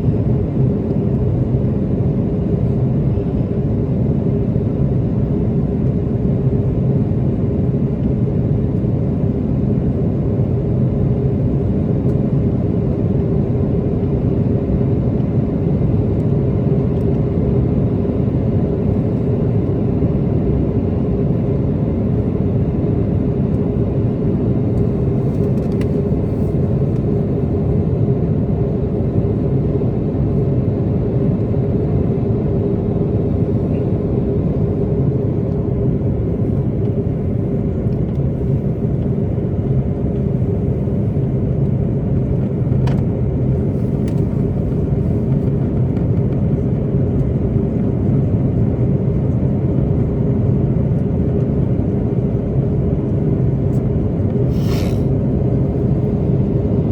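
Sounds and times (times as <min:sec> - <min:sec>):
airliner cabin rumble: 0:00.0 - 0:56.9
steady hum: 0:54.3 - 0:56.9.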